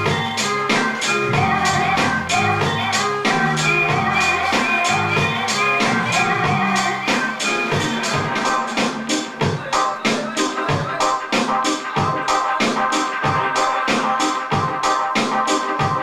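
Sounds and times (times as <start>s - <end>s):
electronic dance music: 0.0s - 16.0s.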